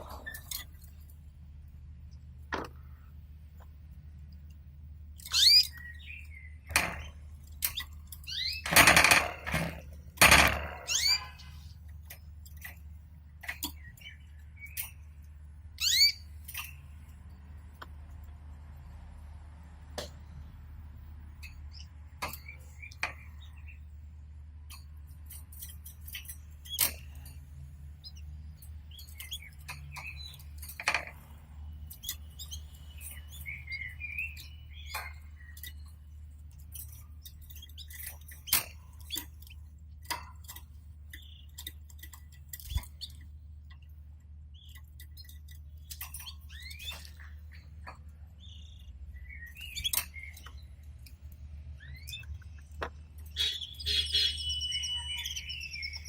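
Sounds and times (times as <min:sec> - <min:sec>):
canaries chirping: 0:05.1 - 0:12.8, 0:13.4 - 0:17.6, 0:24.7 - 0:56.0.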